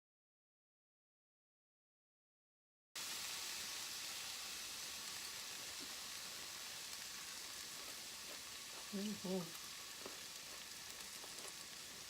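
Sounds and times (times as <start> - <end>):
vegetables sizzling in a skillet: 3.0 - 12.0.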